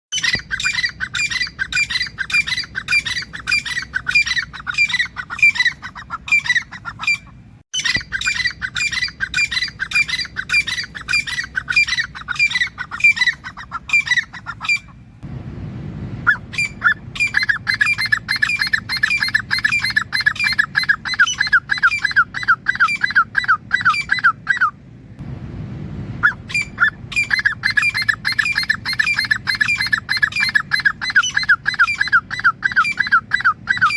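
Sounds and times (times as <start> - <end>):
francolin calling: 16.3 - 24.7, 26.2 - 33.9.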